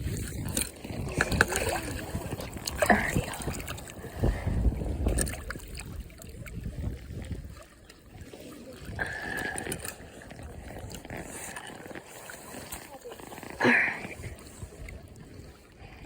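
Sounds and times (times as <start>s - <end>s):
water trickling and sloshing: 0.0s - 16.0s.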